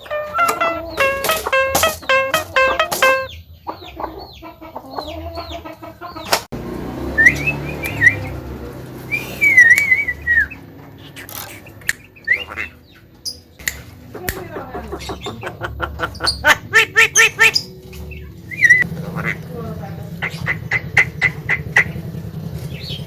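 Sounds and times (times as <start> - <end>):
myna calling: 12.2 - 13.1, 14.0 - 22.2.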